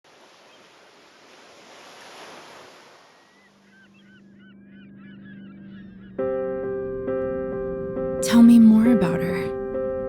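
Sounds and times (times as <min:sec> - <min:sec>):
sea waves washing: 0:00.0 - 0:03.6.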